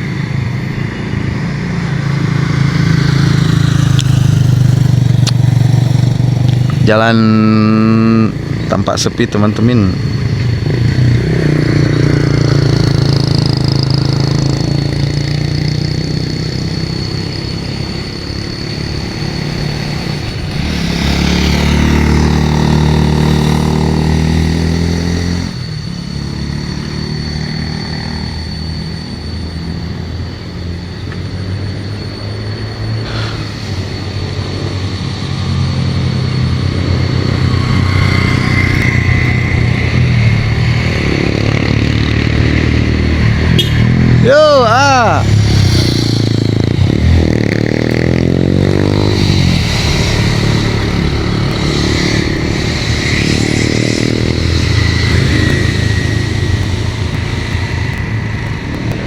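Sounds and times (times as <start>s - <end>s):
deep vehicle passing: 0.0s - 59.0s
vehicles passing: 0.0s - 59.0s
thin high-pitched tone: 43.6s - 46.4s.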